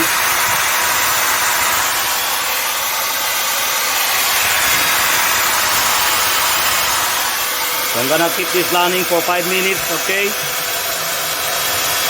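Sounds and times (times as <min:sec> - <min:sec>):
circular saw running: 0:00.0 - 0:12.0.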